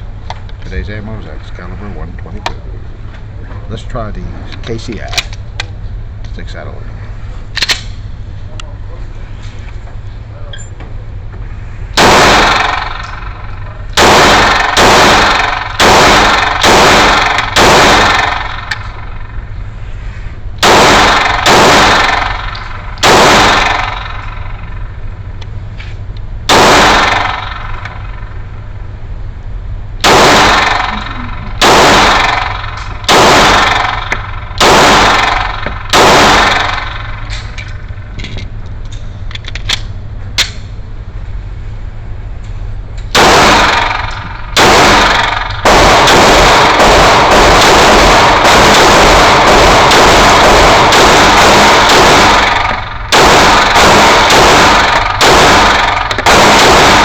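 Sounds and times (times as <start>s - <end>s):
pistol shots: 12.0s - 13.4s, 14.0s - 19.0s, 20.6s - 24.5s, 26.5s - 28.1s, 30.0s - 37.4s, 43.1s - 57.0s.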